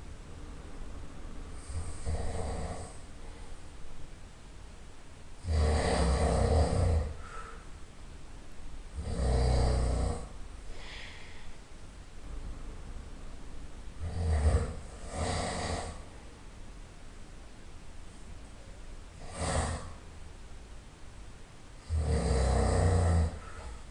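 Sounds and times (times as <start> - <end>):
quiet breaths: 0.0 - 4.0, 5.4 - 16.5, 21.7 - 23.9
person snoring loudly: 1.6 - 3.0, 5.4 - 7.5, 9.0 - 10.4, 14.0 - 16.0, 19.2 - 20.0, 21.8 - 23.7.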